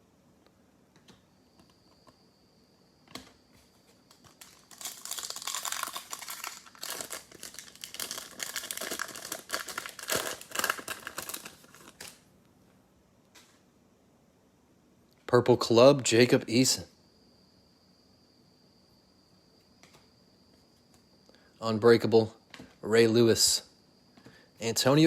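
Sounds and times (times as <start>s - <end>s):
plastic wrapper crinkling and tearing: 4.1s - 12.2s.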